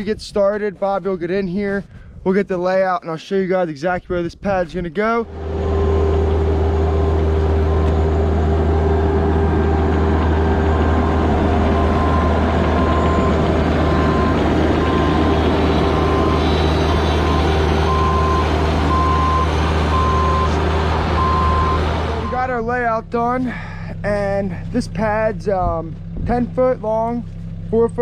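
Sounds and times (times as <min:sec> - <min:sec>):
diesel engine running: 0:05.2 - 0:28.0
travel alarm beeping: 0:09.6 - 0:22.4.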